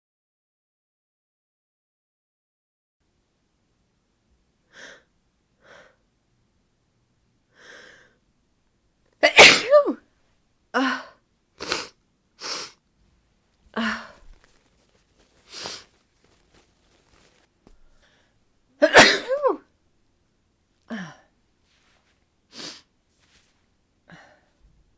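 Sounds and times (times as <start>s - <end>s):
faint breaths: 7.5s - 8.3s, 13.7s - 18.4s
woman sneezing: 9.2s - 10.0s, 18.8s - 19.6s.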